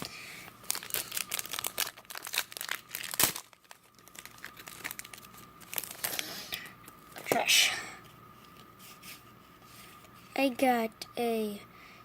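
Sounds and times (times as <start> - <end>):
foil wrapper crinkling: 0.0 - 7.4.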